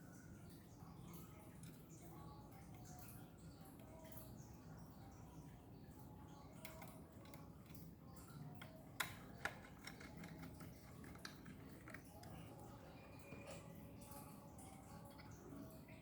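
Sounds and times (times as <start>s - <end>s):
light handling ticks: 6.6s - 13.7s
laptop parts clicking: 8.6s - 12.6s.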